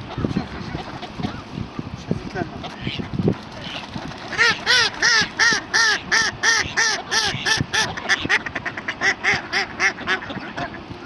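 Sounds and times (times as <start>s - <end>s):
duck quacking: 3.7s - 10.8s.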